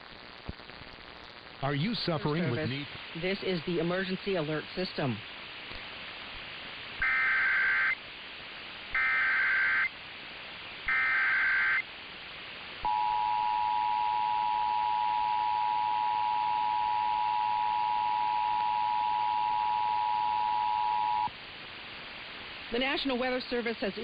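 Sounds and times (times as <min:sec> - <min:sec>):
faint radio hiss: 0:00.0 - 0:24.0
buzzy data bursts: 0:07.0 - 0:08.0, 0:08.9 - 0:09.9, 0:10.9 - 0:11.9.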